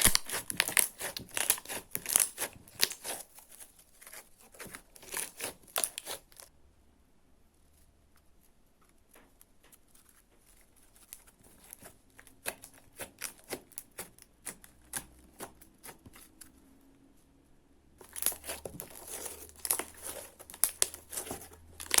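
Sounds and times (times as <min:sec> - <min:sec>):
slime squeezed crackling: 0:00.0 - 0:06.5, 0:11.0 - 0:16.3, 0:18.0 - 0:22.0.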